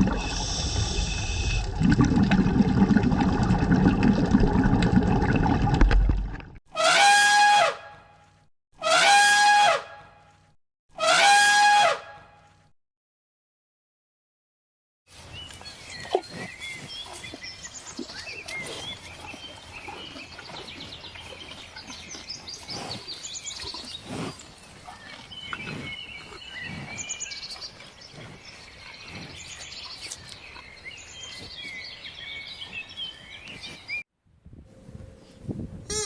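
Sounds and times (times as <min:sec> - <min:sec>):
small birds chirping: 0:15.4 - 0:34.0.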